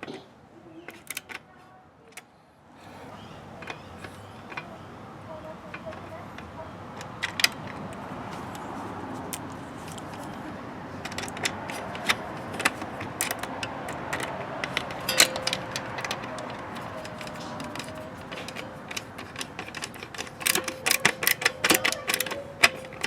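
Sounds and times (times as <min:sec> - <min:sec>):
screwdriver clicking on metal: 0:00.9 - 0:01.4, 0:11.0 - 0:23.0.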